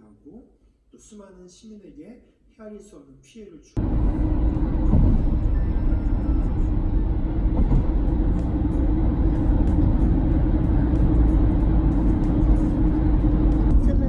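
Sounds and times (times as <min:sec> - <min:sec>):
road and engine rumble in car: 0:03.8 - 0:14.0.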